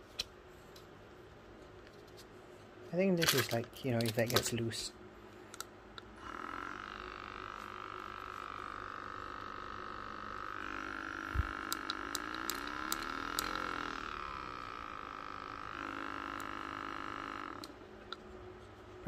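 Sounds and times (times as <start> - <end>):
massage gun motor whine: 3.3 - 19.0
sharp clicks: 11.4 - 13.8.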